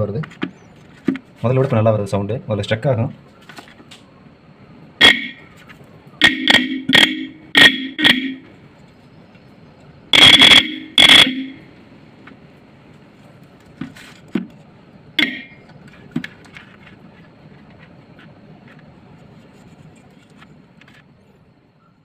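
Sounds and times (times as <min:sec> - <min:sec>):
electric horn blast: 0:05.0 - 0:05.6, 0:06.2 - 0:08.6, 0:10.1 - 0:11.8, 0:15.2 - 0:15.6.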